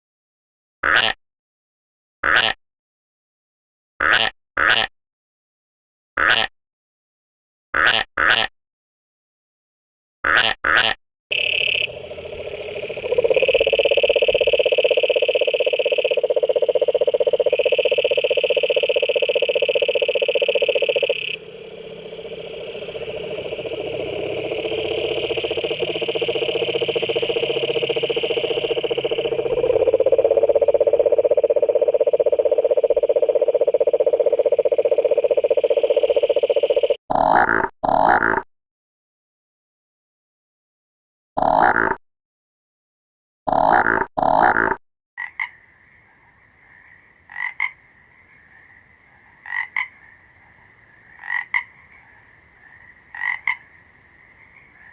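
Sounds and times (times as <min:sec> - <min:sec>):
high frog trill: 0:10.3 - 0:38.4, 0:43.5 - 0:45.5
low pulsed frog trill: 0:10.3 - 0:38.5, 0:41.4 - 0:42.0, 0:43.5 - 0:45.6.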